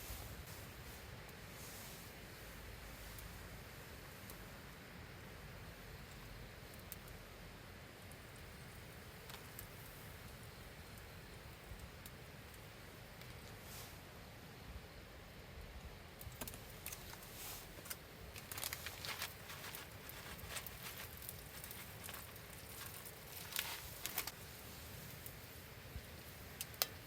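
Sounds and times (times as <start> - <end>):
low steady hiss: 0.0 - 27.0
campfire crackling and popping: 3.1 - 7.3, 7.9 - 13.6, 15.7 - 27.0.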